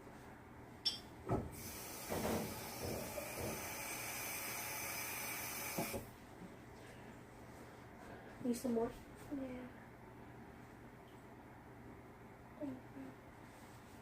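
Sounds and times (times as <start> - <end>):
water running: 1.6 - 6.1.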